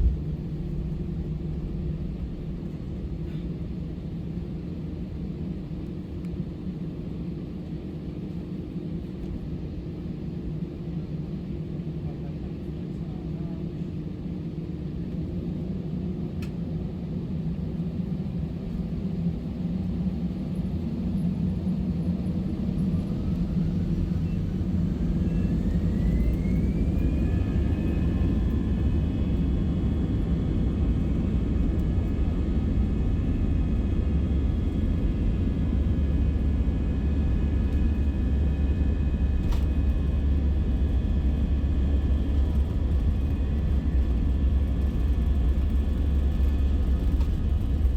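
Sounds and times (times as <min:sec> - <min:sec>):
low engine rumble: 0:00.0 - 0:09.4, 0:17.7 - 0:47.9
jet engine whine: 0:00.0 - 0:47.9.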